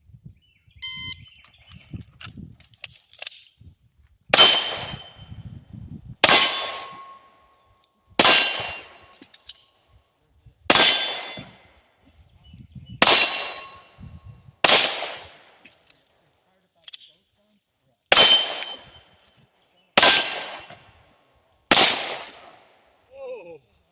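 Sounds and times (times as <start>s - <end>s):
gunshots: 4.3s - 5.2s, 6.2s - 7.2s, 8.2s - 9.2s, 10.7s - 11.7s, 13.0s - 13.9s, 14.6s - 15.7s, 18.1s - 19.0s, 20.0s - 20.9s, 21.7s - 22.7s
steel target ringing: 6.2s - 7.3s, 8.2s - 9.2s, 13.0s - 14.0s, 18.1s - 19.0s.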